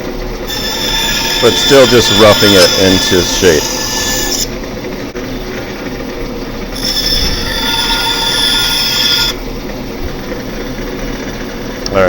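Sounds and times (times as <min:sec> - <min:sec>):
bandsaw humming: 0:00.0 - 0:05.1, 0:06.6 - 0:09.7
saw blade whining through wood: 0:00.4 - 0:04.6, 0:06.7 - 0:09.4.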